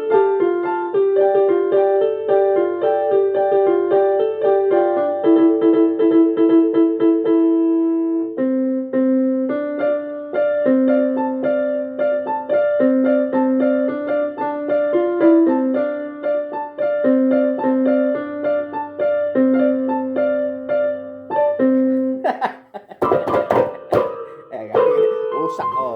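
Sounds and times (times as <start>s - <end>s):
electronic keyboard-like tune: 23.0s - 25.9s.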